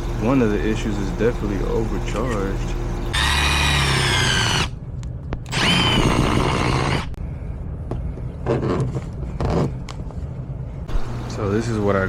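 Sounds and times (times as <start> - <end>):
power tool motor whirring: 3.1 - 4.8, 5.5 - 7.2.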